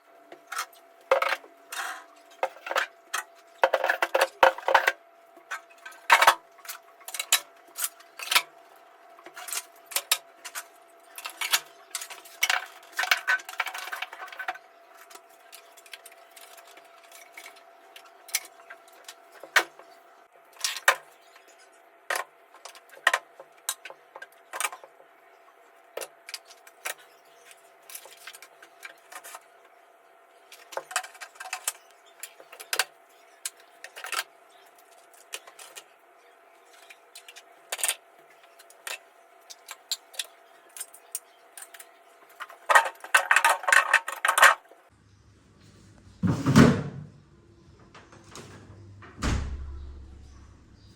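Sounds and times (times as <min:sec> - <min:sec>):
kitchenware clinking and clattering: 0:03.6 - 0:04.9.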